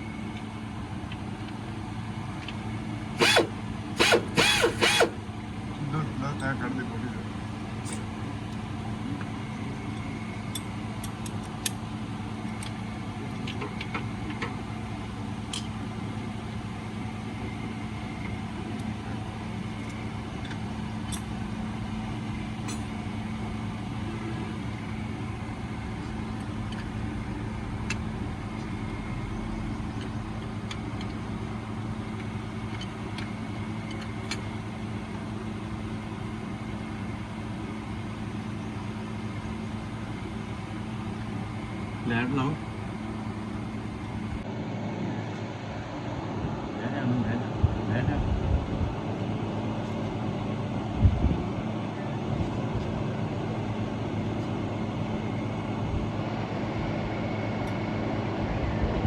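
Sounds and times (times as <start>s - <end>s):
car engine idling: 23.4s - 33.3s.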